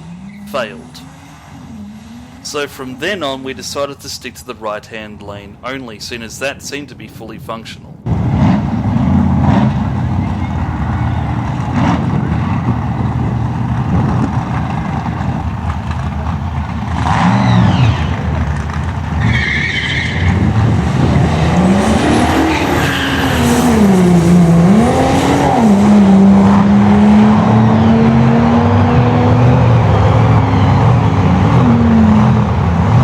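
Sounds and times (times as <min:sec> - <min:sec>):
car engine at full throttle: 0:00.0 - 0:03.8, 0:08.1 - 0:33.0.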